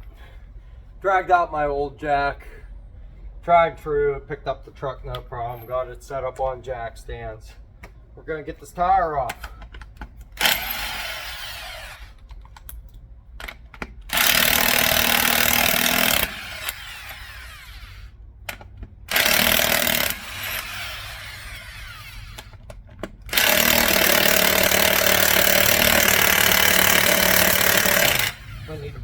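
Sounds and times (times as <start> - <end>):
impact wrench hammering: 13.8 - 17.5, 18.5 - 22.6, 23.3 - 28.7.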